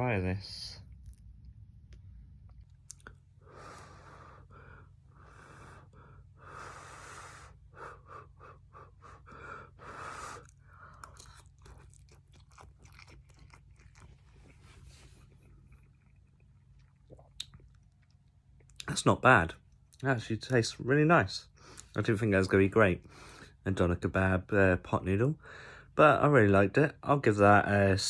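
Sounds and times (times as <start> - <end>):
steady low hum: 0.0 - 24.8
person chewing: 2.5 - 3.9, 10.2 - 18.8.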